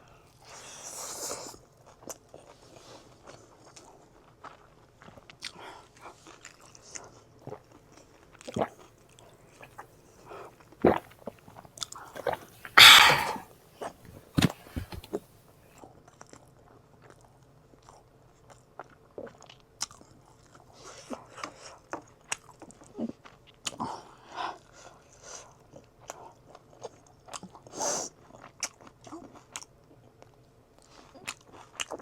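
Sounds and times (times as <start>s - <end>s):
mouth clicks: 12.3s - 13.4s
person chewing food: 12.5s - 13.4s.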